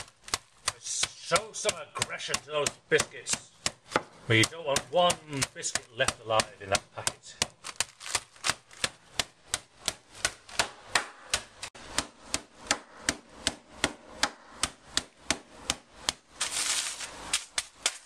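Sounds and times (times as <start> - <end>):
rolling pin striking biscuits in bag: 0.0 - 12.4, 14.3 - 18.0
rustle of noise: 16.4 - 18.0.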